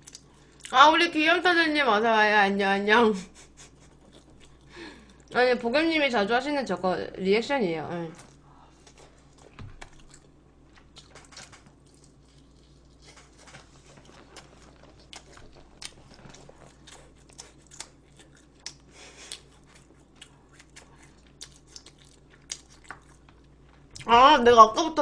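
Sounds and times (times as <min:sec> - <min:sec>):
person chewing food: 0:00.0 - 0:00.7, 0:03.6 - 0:05.4, 0:08.2 - 0:24.1.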